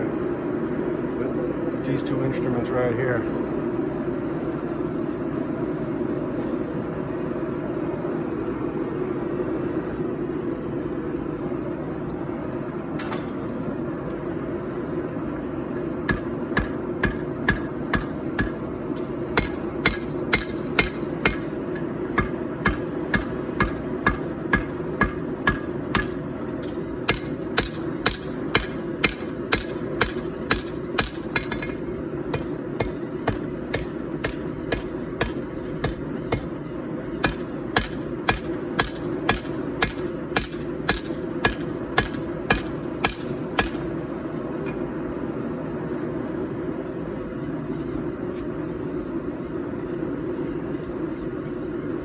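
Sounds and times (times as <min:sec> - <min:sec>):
hammer blows on anvil: 0:16.1 - 0:36.5, 0:37.2 - 0:43.9.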